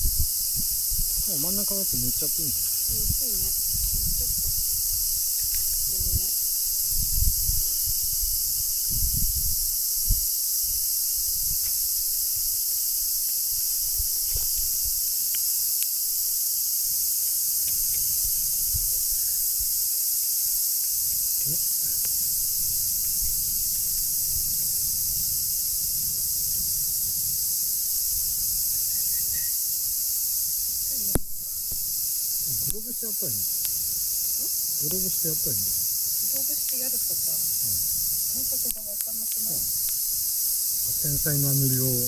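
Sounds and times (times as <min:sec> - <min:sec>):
wind buffeting microphone: 0:00.0 - 0:11.7, 0:17.8 - 0:19.7, 0:21.0 - 0:29.4
high-pitched insect chorus: 0:00.0 - 0:42.0.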